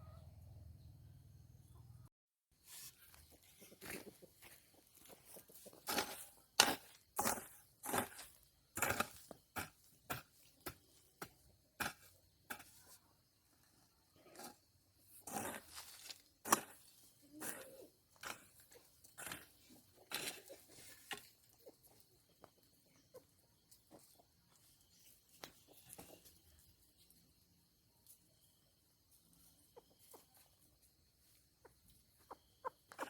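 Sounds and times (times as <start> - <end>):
hand tool digging dry soil: 2.6 - 22.1.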